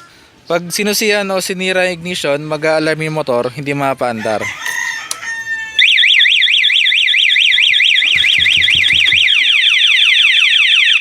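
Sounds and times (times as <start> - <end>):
motorcycle alarm siren warbling: 5.6 - 11.0.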